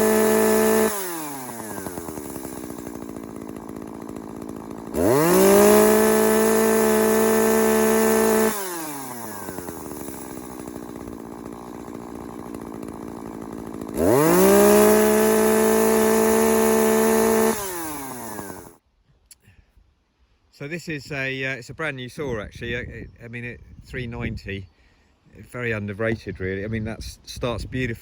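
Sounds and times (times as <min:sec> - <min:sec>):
chainsaw idling and revving: 0:00.0 - 0:18.8.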